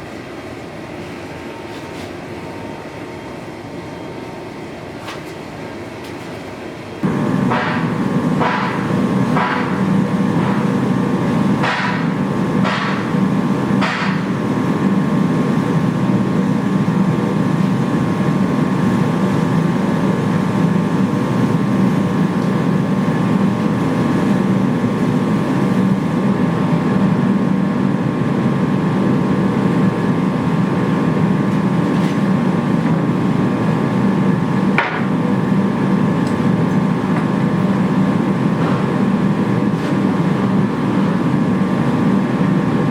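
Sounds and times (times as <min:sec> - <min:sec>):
forge burner roaring: 0:06.9 - 0:42.9.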